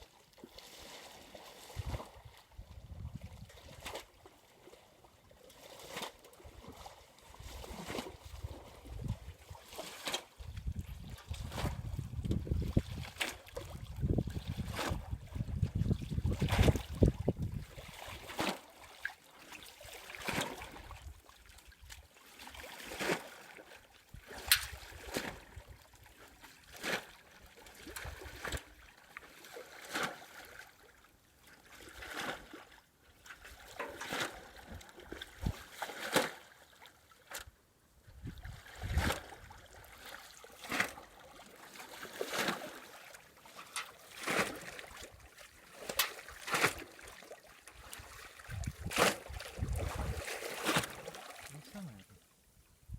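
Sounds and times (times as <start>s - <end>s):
water splashing: 38.8s - 52.2s.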